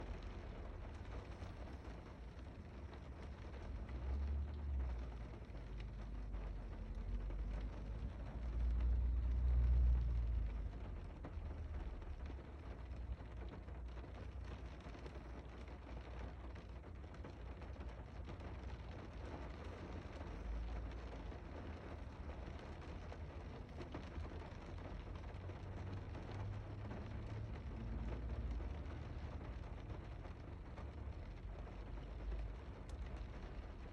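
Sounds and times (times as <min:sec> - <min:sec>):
steady rain falling: 0:00.0 - 0:33.9.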